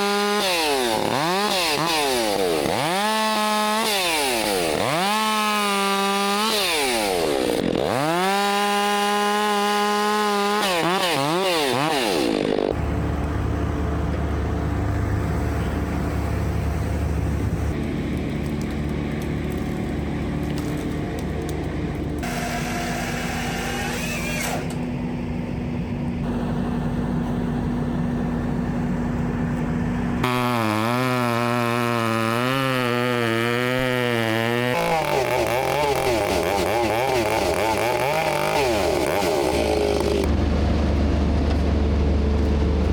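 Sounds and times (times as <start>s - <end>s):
chainsaws revving and cutting: 0.0s - 12.8s, 30.2s - 40.3s
steady low engine note: 12.7s - 23.0s, 24.8s - 32.8s, 40.0s - 42.9s.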